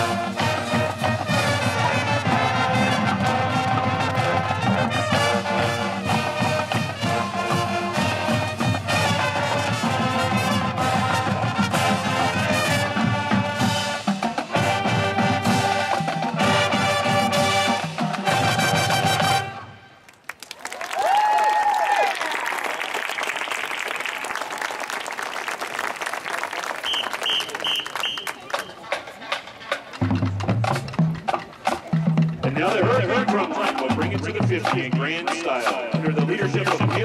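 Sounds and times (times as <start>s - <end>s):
drum line: 0.0s - 19.6s, 26.8s - 37.0s
brass section playing chords: 0.0s - 20.0s.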